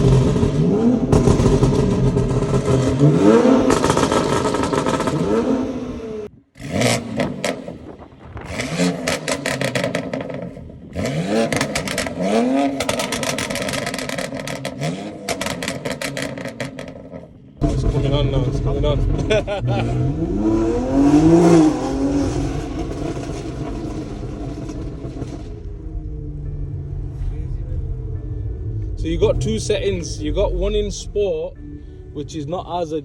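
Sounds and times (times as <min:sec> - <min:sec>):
exhaust pops and crackles: 0:00.0 - 0:05.5, 0:06.3 - 0:20.0, 0:21.4 - 0:28.1
car engine revving: 0:00.0 - 0:33.0.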